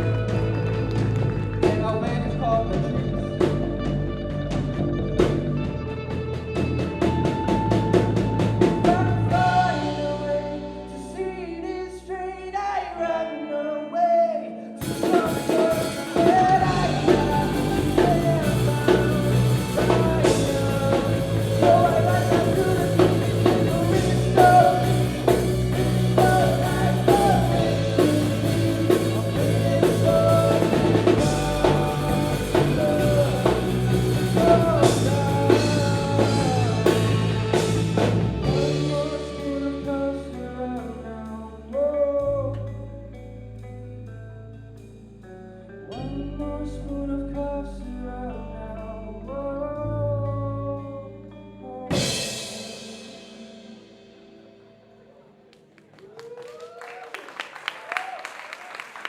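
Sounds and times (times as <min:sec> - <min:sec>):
drum kit: 0:00.0 - 0:10.7, 0:14.8 - 0:40.9, 0:51.9 - 0:54.4
bass and chords: 0:00.0 - 0:55.8
person singing: 0:07.3 - 0:43.1, 0:45.9 - 0:53.8.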